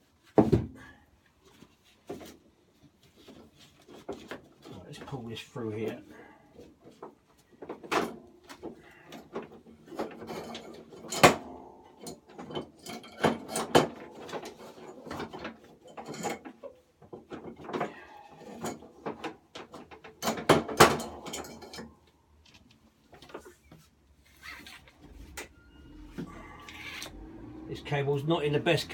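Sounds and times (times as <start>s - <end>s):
metal parts rattling and clicking: 7.6s - 22.6s.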